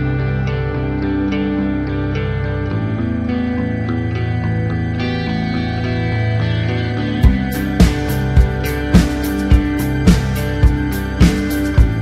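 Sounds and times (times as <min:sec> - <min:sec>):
plucked guitar with sustained tones: 0:00.0 - 0:12.0.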